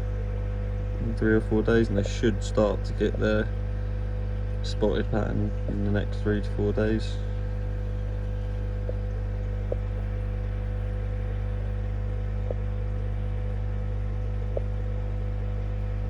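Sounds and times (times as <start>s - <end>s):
low hum of air pumps and filters: 0.0s - 16.0s
faint clicks: 7.5s - 13.2s, 14.4s - 14.8s.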